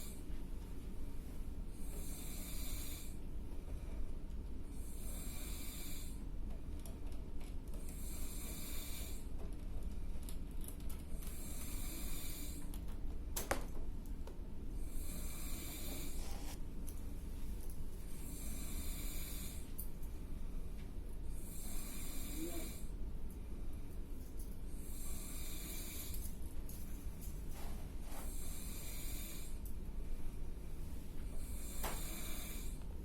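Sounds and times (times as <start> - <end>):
man snoring loudly: 2.0 - 3.1, 5.0 - 6.2, 14.9 - 16.2, 21.5 - 22.8, 24.9 - 26.1, 31.4 - 32.8.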